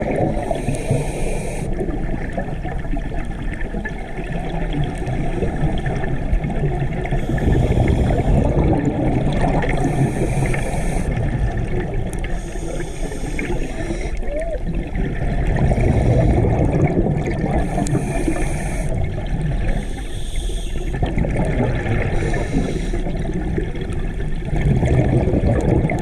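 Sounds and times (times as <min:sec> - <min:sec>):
underwater rumble: 0:00.0 - 0:26.0
scuba regulator breathing hiss: 0:00.3 - 0:01.8, 0:07.1 - 0:08.4, 0:09.8 - 0:11.3, 0:12.2 - 0:14.2, 0:15.6 - 0:16.4, 0:17.6 - 0:19.0, 0:19.6 - 0:21.0, 0:22.1 - 0:23.3.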